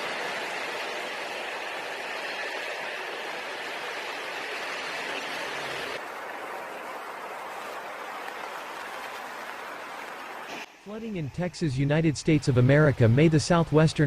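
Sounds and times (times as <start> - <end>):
water rushing: 0.0 - 14.0.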